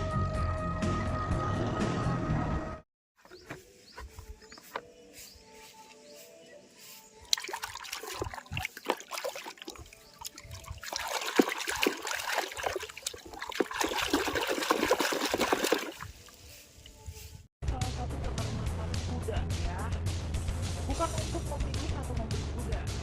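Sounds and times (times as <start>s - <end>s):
water trickling and splashing: 6.8s - 17.3s.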